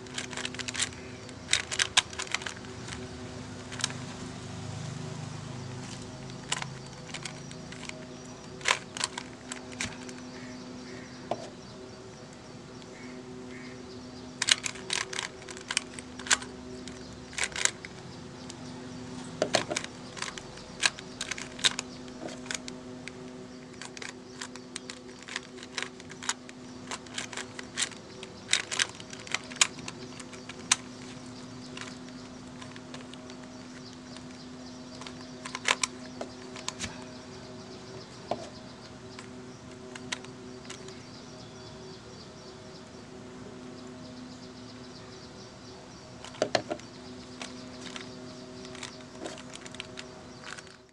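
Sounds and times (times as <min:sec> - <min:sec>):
puzzle cube clicking: 0:00.0 - 0:03.0, 0:06.3 - 0:10.3, 0:14.4 - 0:18.0, 0:19.4 - 0:37.0, 0:46.2 - 0:50.9.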